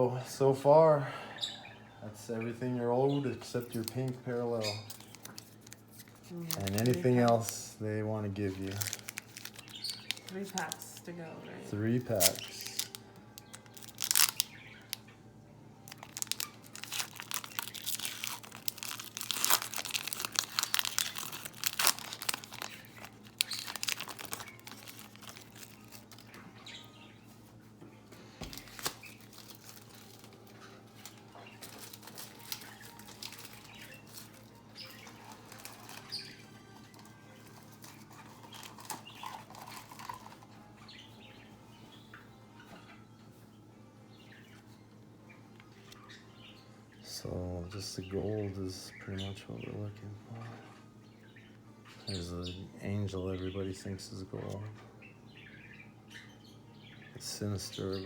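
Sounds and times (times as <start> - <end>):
cards rustling: 3.4 - 7.8, 8.4 - 11.0, 11.9 - 15.0, 15.9 - 26.4, 28.4 - 40.5
wrapper tearing and crinkling: 4.8 - 7.6, 8.6 - 11.0, 12.0 - 15.0, 15.9 - 26.4, 28.4 - 40.4.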